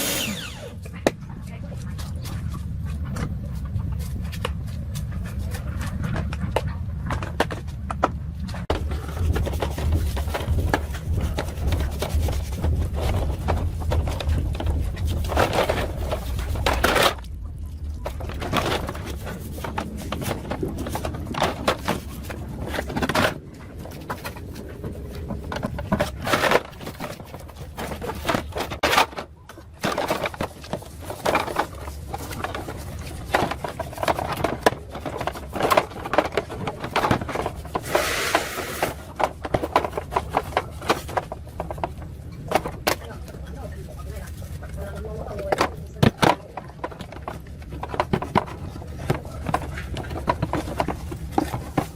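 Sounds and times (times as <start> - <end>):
short hiss: 37.8 - 38.8.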